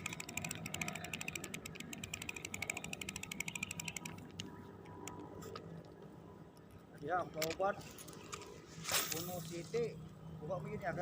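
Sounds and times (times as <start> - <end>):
fishing reel ratchet clicking: 0.0 - 4.4.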